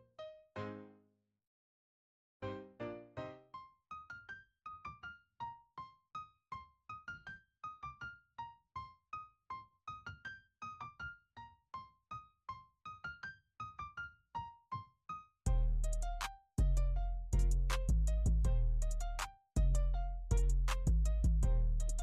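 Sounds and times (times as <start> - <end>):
loud music with heavy bass: 17.4 - 18.4, 20.3 - 22.0.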